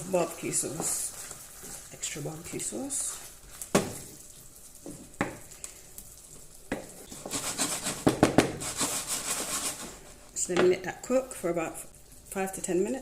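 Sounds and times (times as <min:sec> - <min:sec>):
stirring and scraping: 0:00.0 - 0:05.2, 0:06.8 - 0:10.6
food sizzling in a frying pan: 0:00.0 - 0:13.0.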